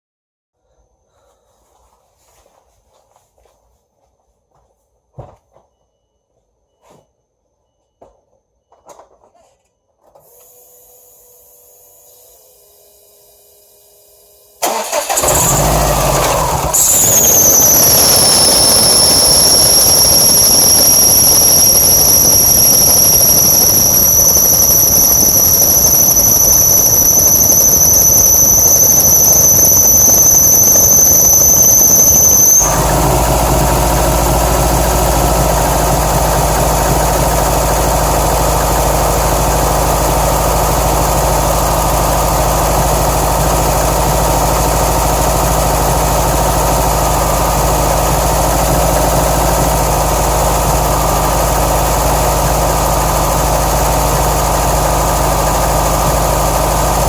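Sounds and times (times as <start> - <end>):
car engine idling roughly: 14.6 - 57.0
high-pitched whine: 15.2 - 57.0.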